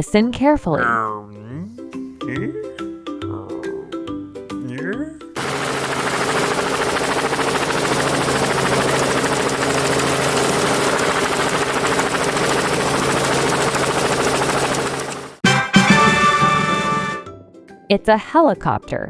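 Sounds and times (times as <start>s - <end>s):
helicopter engine hum: 5.4s - 15.4s
helicopter rotor blades beating: 5.4s - 15.4s.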